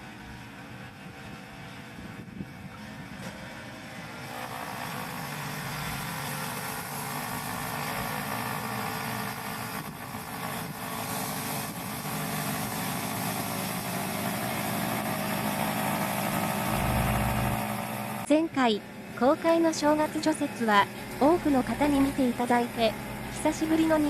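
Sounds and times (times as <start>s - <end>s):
snowblower engine running: 2.9s - 24.0s.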